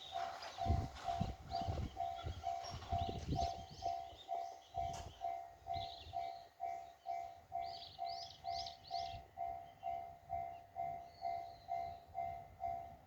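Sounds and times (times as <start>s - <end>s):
level crossing warning bell: 0.0s - 13.0s.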